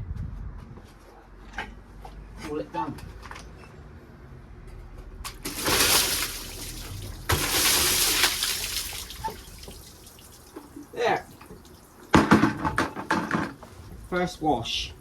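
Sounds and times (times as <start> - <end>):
water splashing from bucket: 5.2 - 12.9.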